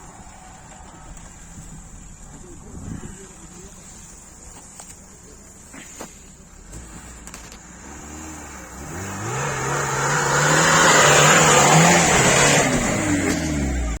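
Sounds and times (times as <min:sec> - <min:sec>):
car engine revving: 0:06.5 - 0:14.0.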